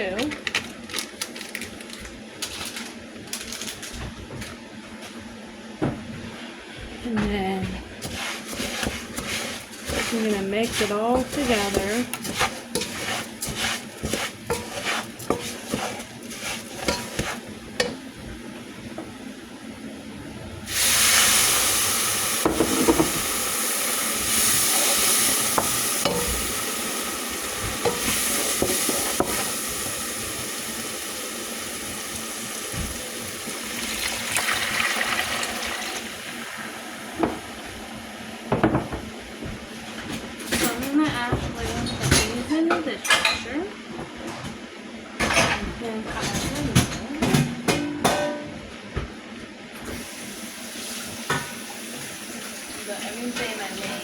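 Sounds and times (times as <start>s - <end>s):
food sizzling in hot pan: 8.0s - 17.8s, 20.7s - 38.5s, 49.9s - 54.0s
spoon scraping food in pan: 8.0s - 18.0s.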